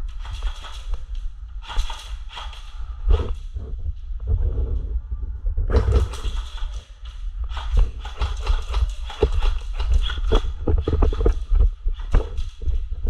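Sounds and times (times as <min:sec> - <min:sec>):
low rumble on microphone: 0:00.0 - 0:13.0
sharp clicks and knocks: 0:05.7 - 0:12.7.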